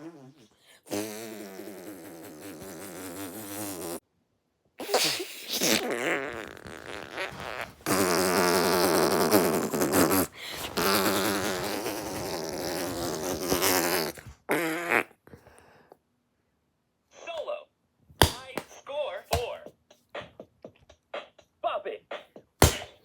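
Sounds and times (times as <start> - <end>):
raspy wobbling fart noises: 0.0 - 4.0, 4.9 - 15.2.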